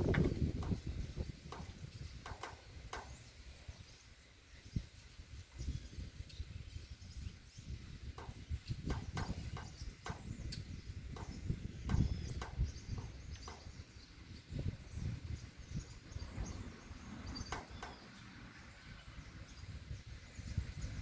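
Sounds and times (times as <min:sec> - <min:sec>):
bird chirps: 0:00.0 - 0:21.0
wind buffeting microphone: 0:00.0 - 0:21.0.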